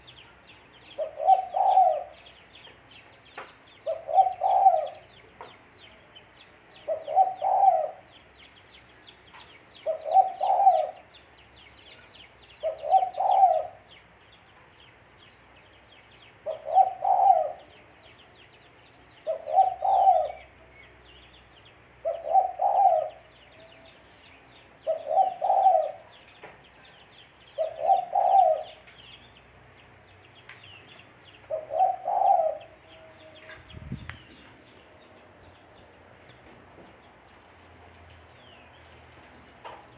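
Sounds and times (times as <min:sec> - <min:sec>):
dove cooing: 0:01.0 - 0:02.3, 0:03.8 - 0:05.1, 0:06.9 - 0:08.1, 0:09.8 - 0:11.1, 0:12.6 - 0:13.8, 0:16.4 - 0:17.8, 0:19.2 - 0:20.6, 0:22.0 - 0:24.1, 0:24.8 - 0:26.2, 0:27.6 - 0:28.8, 0:31.5 - 0:33.6.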